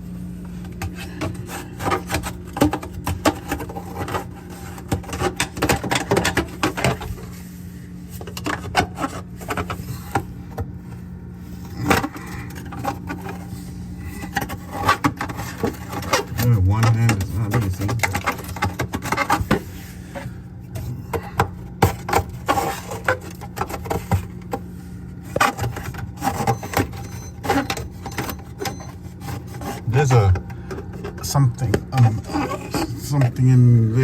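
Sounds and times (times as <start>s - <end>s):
refrigerator humming: 0.0s - 34.0s
tool scraping and chipping ice: 31.3s - 33.2s.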